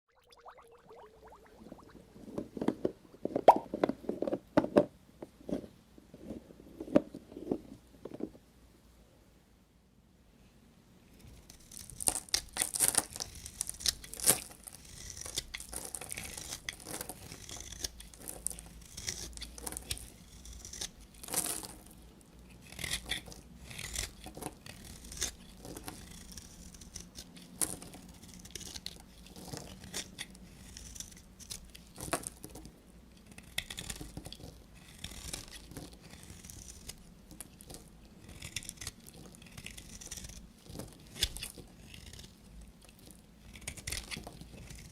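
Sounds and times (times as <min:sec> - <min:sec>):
knife cutting soap: 0:11.2 - 0:44.9.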